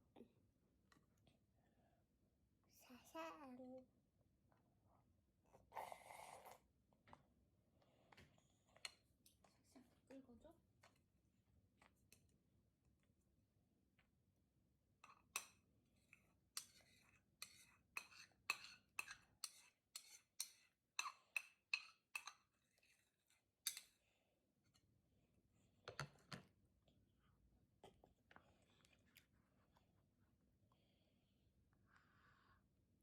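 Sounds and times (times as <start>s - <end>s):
spoon scraping and tapping bowl: 15.0s - 24.0s.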